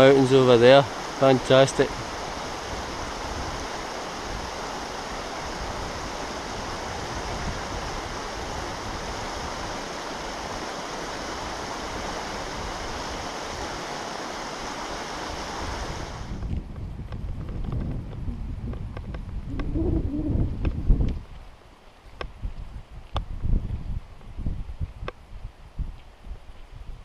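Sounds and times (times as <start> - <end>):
stream water rushing: 0.0 - 16.4
wind rumbling on microphone: 1.0 - 27.0.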